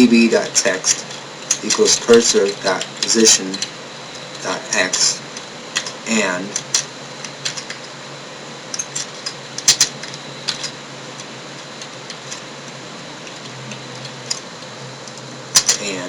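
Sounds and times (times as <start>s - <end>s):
steady hiss and low hum: 0.0s - 16.0s
computer keyboard keystrokes: 8.8s - 10.7s.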